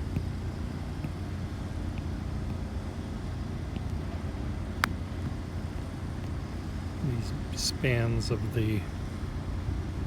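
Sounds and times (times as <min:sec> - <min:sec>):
city traffic rumble: 0:00.0 - 0:10.0.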